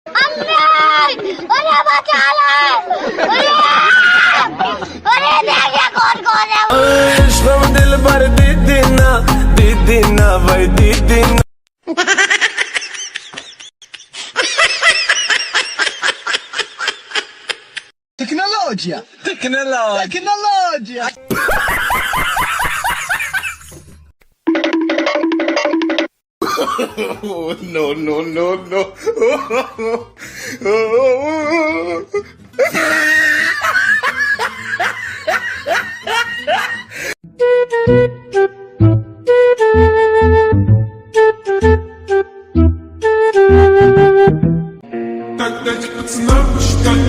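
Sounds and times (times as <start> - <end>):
people laughing: 0.2 - 6.6, 11.9 - 17.8, 21.3 - 23.8, 26.4 - 30.1, 32.6 - 37.1
music: 6.7 - 11.4, 37.2 - 47.0.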